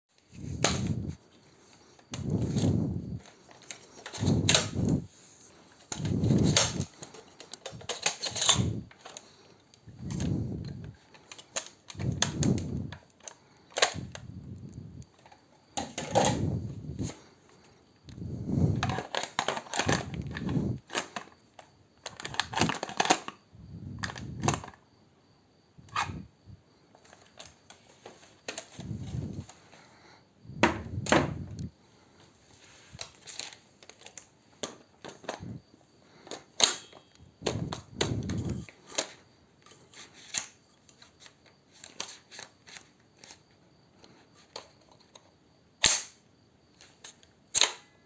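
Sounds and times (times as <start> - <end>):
airsoft gun reloading clicks: 45.8 - 46.2, 47.0 - 47.9.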